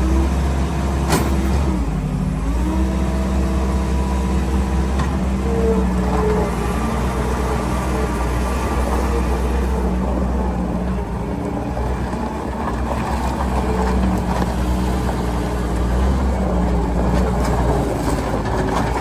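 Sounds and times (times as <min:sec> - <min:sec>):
diesel engine running: 0:00.0 - 0:19.0.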